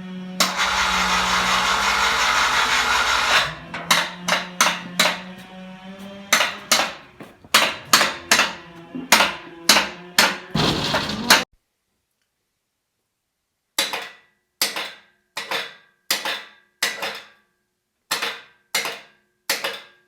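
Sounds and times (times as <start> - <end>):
band sawmill humming: 0.0 - 11.5
sharp ringing knocks: 2.9 - 11.4.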